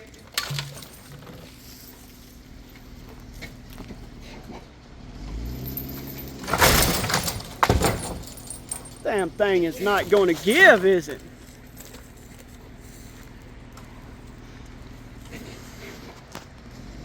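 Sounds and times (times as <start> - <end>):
vehicle engine revving: 2.5 - 7.6, 12.7 - 17.0.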